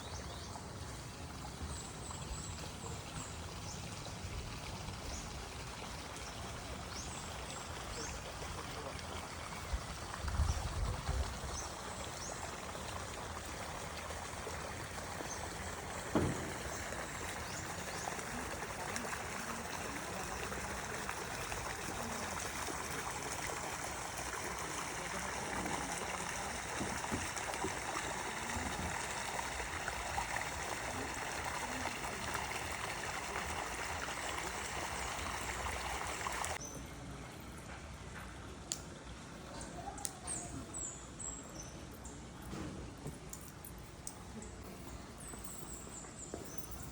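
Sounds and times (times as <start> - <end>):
stream water flowing: 0.0 - 39.6
sharp knock: 16.1 - 16.9.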